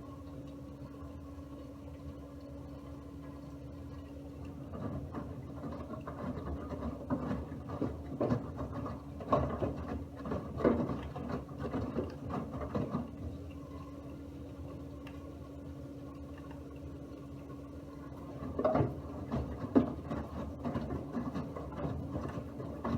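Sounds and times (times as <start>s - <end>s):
washing machine hum: 0.0s - 22.9s
laundry tumbling in drum: 18.3s - 22.9s.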